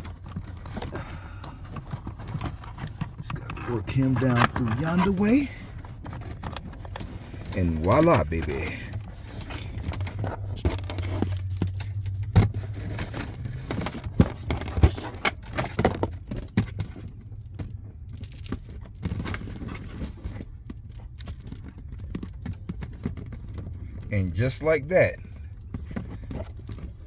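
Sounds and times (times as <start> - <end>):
steady low hum: 0.0 - 21.5
clicks knocks and scrapes of cables: 0.0 - 27.0.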